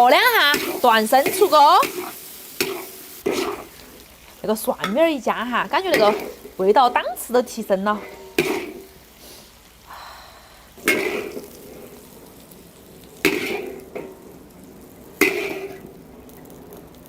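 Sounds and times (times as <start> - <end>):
metal spatula clanging on wok: 0.2 - 2.0, 4.8 - 5.1, 5.8 - 8.9, 10.8 - 11.6, 13.2 - 14.2, 15.2 - 15.8.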